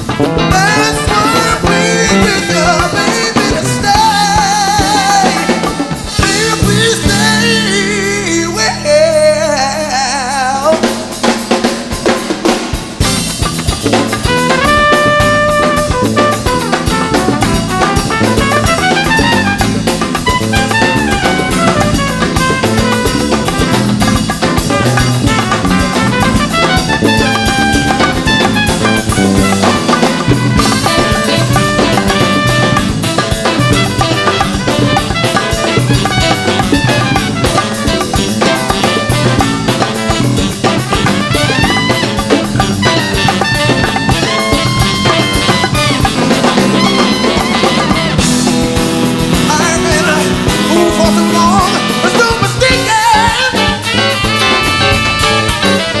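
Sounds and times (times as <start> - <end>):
drum kit steady beat: 0.0 - 8.8, 10.6 - 56.0
lead instrument melodic runs: 13.0 - 52.2.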